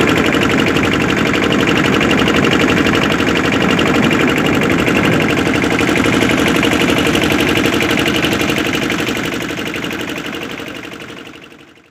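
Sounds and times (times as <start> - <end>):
boat engine chugging: 0.0 - 11.9.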